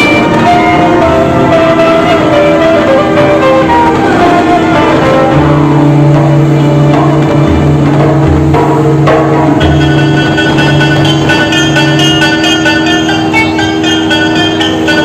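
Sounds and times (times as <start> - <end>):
low bass line: 0.0 - 14.3
instrumental melody: 0.0 - 15.0.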